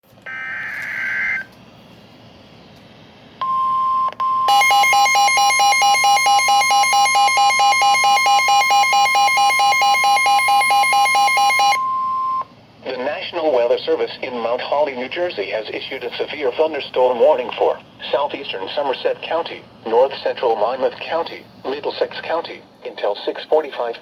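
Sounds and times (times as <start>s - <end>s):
buzzy beeping alarm: 0.3s - 1.5s, 3.4s - 12.5s
screeching header data burst: 0.3s - 1.5s.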